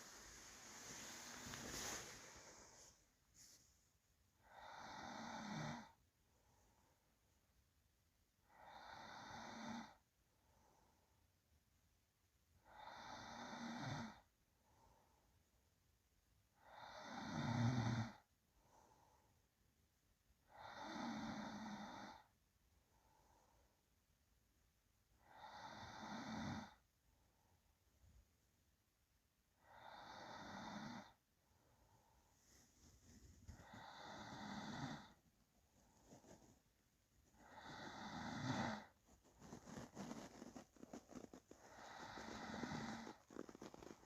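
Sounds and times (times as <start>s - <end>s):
soft breathing: 0.0s - 7.1s, 29.6s - 44.0s
person snoring: 4.4s - 6.0s, 29.6s - 31.2s, 33.5s - 35.2s, 37.3s - 44.0s.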